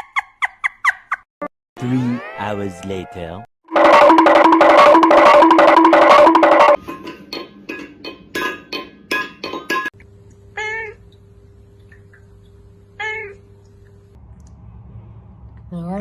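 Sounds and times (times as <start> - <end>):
quickly repeated melody: 3.7 - 6.8.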